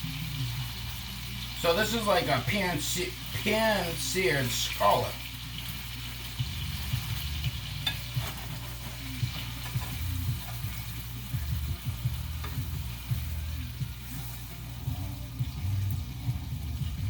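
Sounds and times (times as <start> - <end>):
fish sizzling in a frying pan: 0.0 - 17.0
pops and crackles of frying: 0.0 - 17.0.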